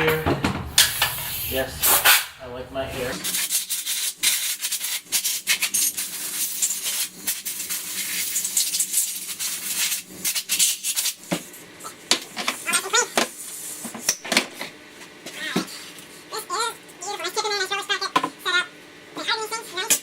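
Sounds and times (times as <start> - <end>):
brush scrubbing: 3.1 - 11.2.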